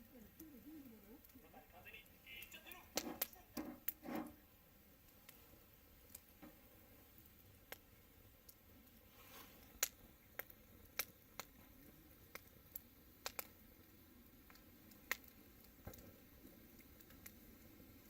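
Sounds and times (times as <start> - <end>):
fire crackling: 0.0 - 18.0.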